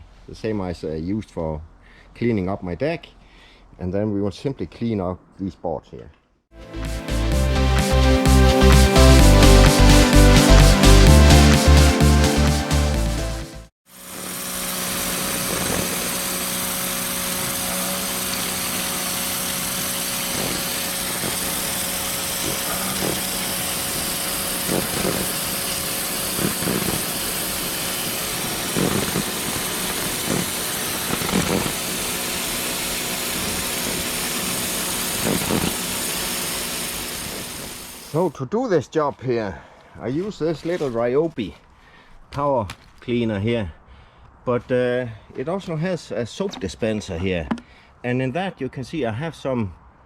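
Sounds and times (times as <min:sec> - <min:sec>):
pressure washer motor hum: 0:06.6 - 0:38.2
high-pressure water jet hissing: 0:14.0 - 0:38.2.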